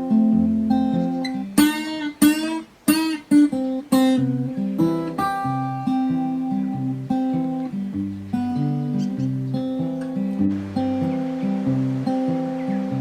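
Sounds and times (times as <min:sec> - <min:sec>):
acoustic guitar music: 0:00.0 - 0:13.0
strummed guitar chords: 0:00.0 - 0:13.0.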